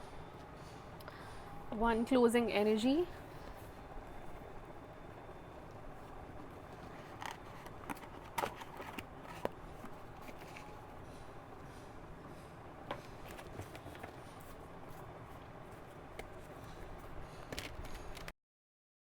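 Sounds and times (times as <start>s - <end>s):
cards clicking and rustling: 6.4s - 10.8s, 12.9s - 18.3s.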